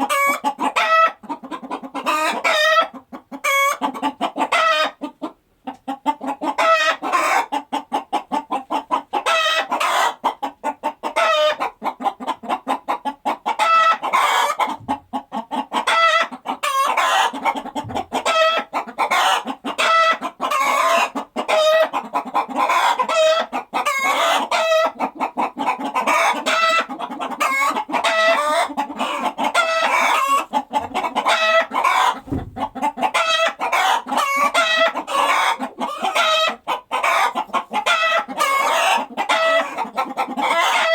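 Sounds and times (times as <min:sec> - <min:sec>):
chickens clucking: 0:00.0 - 0:40.9
dull low thumps: 0:32.2 - 0:32.8.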